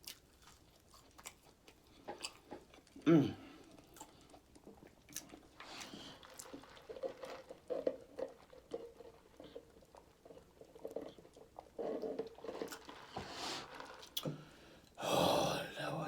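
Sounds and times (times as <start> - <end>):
person chewing fried chicken: 0.0 - 7.6.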